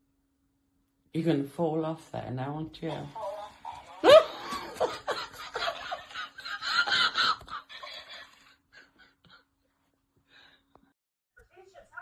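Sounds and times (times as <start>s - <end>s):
person laughing: 3.0s - 9.4s.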